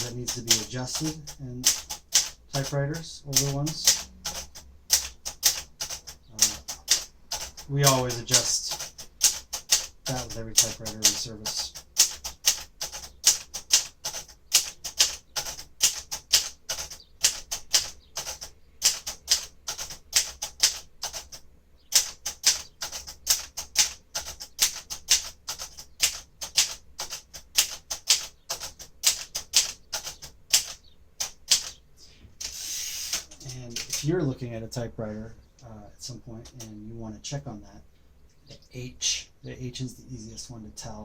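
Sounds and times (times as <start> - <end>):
manual typewriter key strikes: 0.0 - 31.8.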